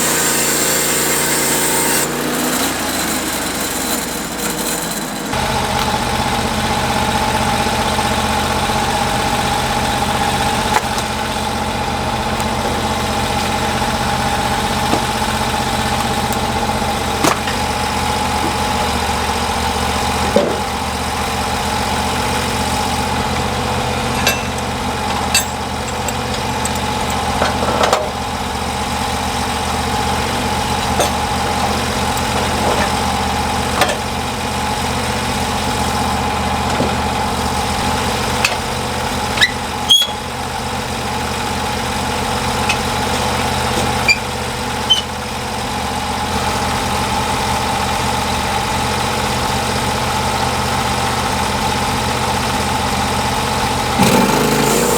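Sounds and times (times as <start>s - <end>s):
sawmill engine running: 0.0s - 54.9s
short sharp clicks and squeaks: 39.4s - 40.3s, 44.1s - 44.3s, 44.9s - 45.1s.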